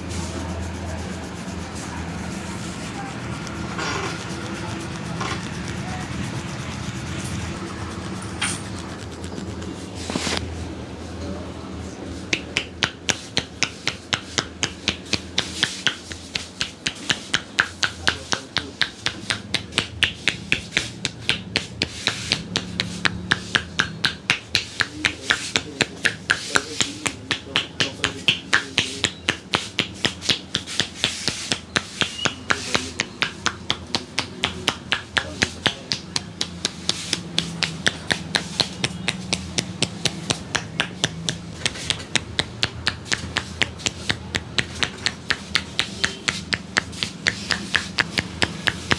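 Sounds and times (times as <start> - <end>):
hands tapping and slapping: 12.2 - 48.9.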